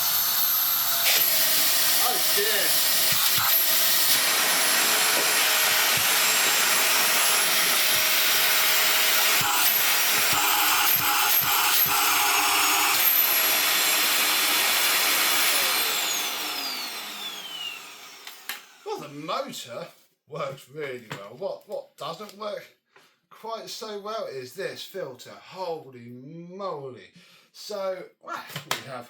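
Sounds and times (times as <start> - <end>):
motor winding down: 0.0 - 18.8
vacuum cleaner motor running: 0.0 - 18.8.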